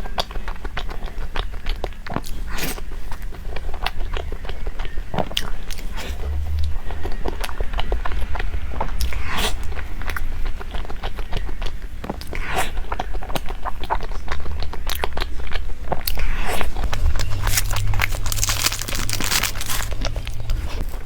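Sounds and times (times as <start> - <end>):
steady low hum: 3.5 - 21.0
person chewing crunchy food: 10.5 - 21.0.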